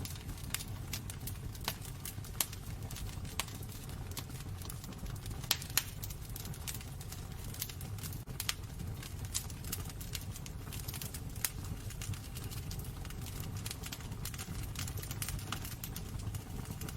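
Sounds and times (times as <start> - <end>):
wood fire crackling: 0.0 - 16.9.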